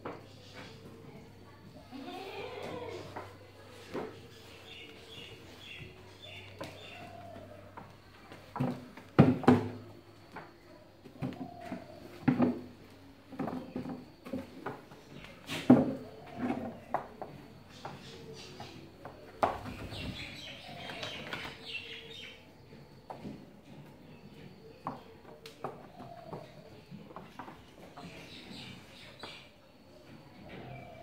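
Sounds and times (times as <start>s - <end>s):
small birds chirping: 3.1s - 8.4s, 14.9s - 23.1s, 23.7s - 31.0s.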